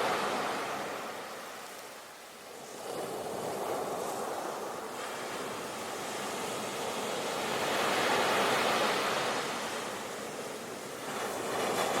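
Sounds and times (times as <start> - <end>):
ocean waves on shore: 0.0 - 12.0.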